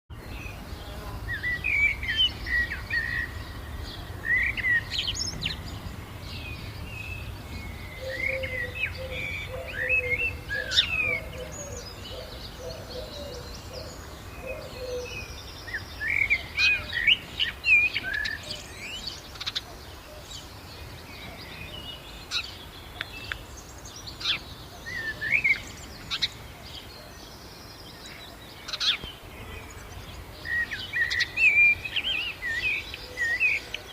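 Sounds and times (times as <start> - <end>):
songbirds chirping: 0.1 - 33.9
lower warbling bird call: 7.8 - 17.2.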